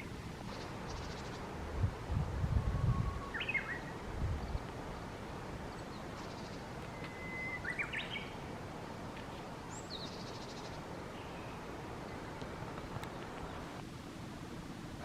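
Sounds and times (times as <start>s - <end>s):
background hiss: 0.0s - 15.0s
bird whistling song: 2.6s - 4.0s, 5.8s - 8.4s
high trilled bird call: 6.3s - 8.4s.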